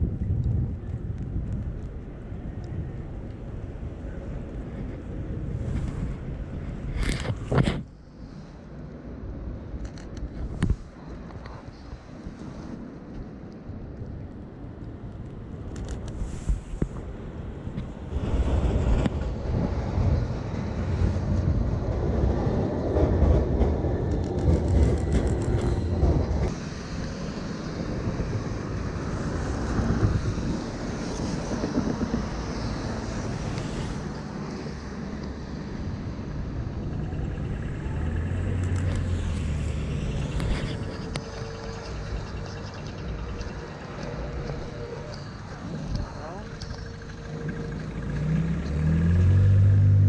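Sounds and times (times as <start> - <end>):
low rumble of traffic: 0.0 - 50.0
vehicle passing on wet road: 26.6 - 42.6, 47.0 - 50.0.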